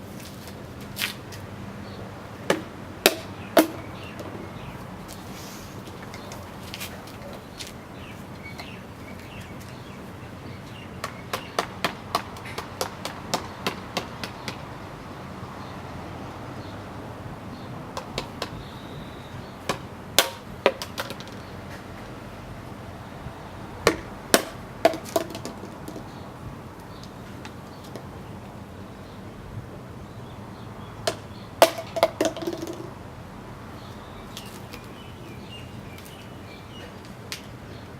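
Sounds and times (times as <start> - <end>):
steady background hiss: 0.0 - 32.2
sharp knocks: 18.0 - 18.7.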